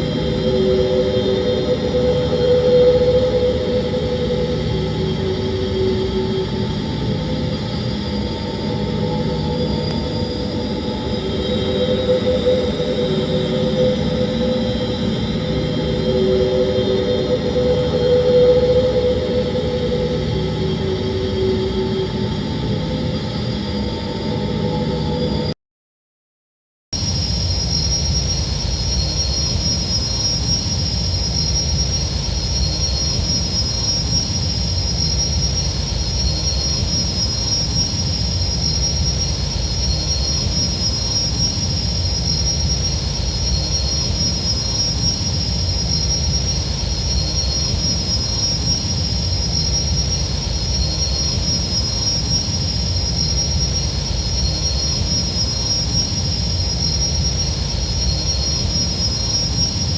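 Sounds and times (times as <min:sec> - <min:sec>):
spacecraft engine rumble and whine: 0:00.0 - 0:25.5.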